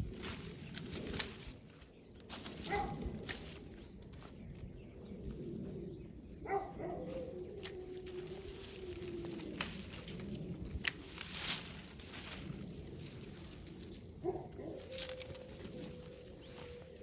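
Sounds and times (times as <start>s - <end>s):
pruning shears snipping: 0.0s - 4.3s, 7.6s - 13.9s, 14.5s - 16.8s
vine branches rustling: 0.0s - 5.3s, 6.5s - 17.0s.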